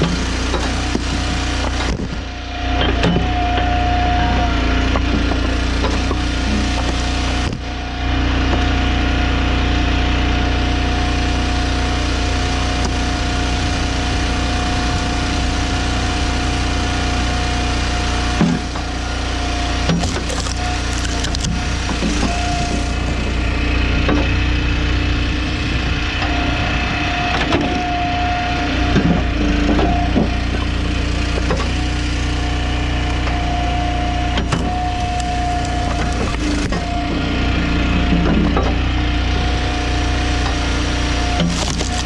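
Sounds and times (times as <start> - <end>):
wood cracking and splitting: 0.0 - 2.3, 4.9 - 7.7, 18.2 - 23.3, 34.2 - 37.0, 40.1 - 42.0
hydraulic whine: 0.0 - 42.0
log splitter engine running: 0.0 - 42.0.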